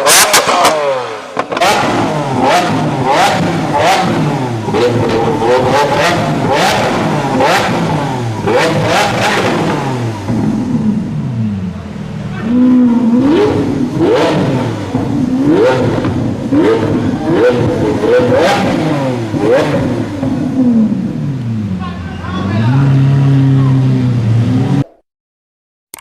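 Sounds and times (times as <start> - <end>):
exhaust pops and bangs: 0.0 - 10.9, 13.5 - 21.0
car engine revving: 0.0 - 24.9.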